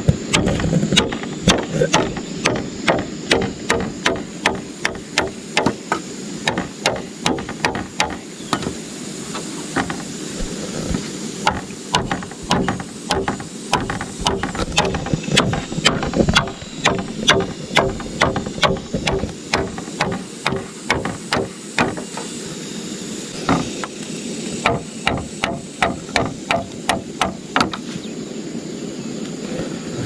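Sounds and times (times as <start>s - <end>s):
tool striking sharp knocks: 0.0s - 8.8s, 9.8s - 10.5s, 11.4s - 22.3s, 23.4s - 24.0s, 24.6s - 27.9s.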